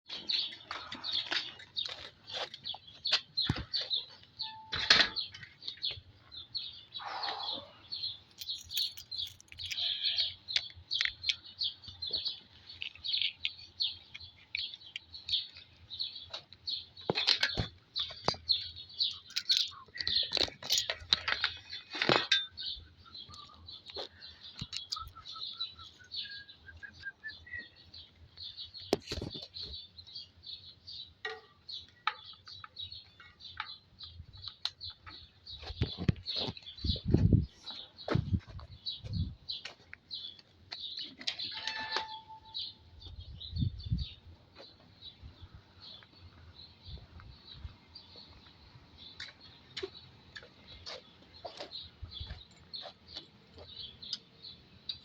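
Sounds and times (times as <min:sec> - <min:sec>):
small birds chirping: 0:00.1 - 0:55.0.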